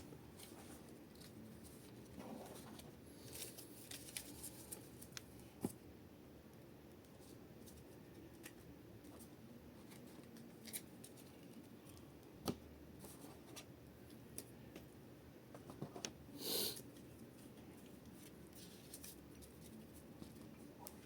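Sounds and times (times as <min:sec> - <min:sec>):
handling trading cards: 0:00.3 - 0:05.5, 0:09.8 - 0:12.1, 0:16.6 - 0:21.0.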